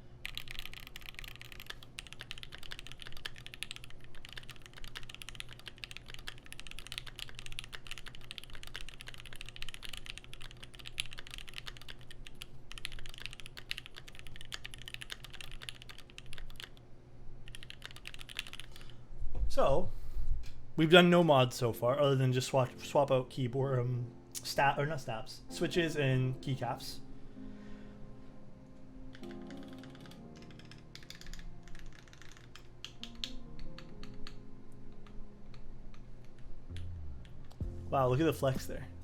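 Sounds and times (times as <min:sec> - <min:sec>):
mechanical keyboard typing: 0:00.2 - 0:16.8, 0:17.5 - 0:18.9, 0:29.1 - 0:34.4.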